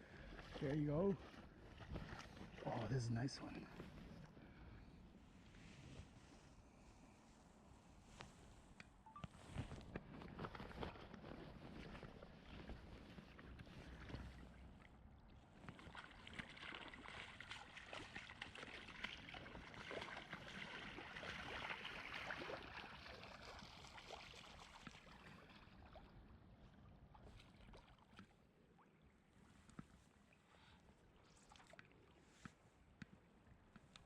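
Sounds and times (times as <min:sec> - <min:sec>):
creek water splashing: 0:00.0 - 0:04.3, 0:10.2 - 0:29.0.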